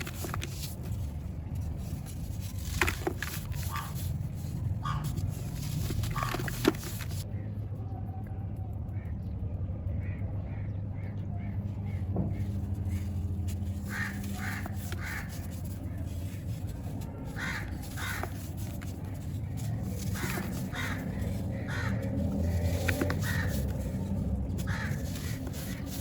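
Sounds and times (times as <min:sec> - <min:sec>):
steady low hum: 0:00.0 - 0:26.0
crows cawing: 0:03.6 - 0:04.0, 0:04.8 - 0:05.3, 0:06.0 - 0:06.6, 0:11.9 - 0:16.0, 0:17.2 - 0:26.0.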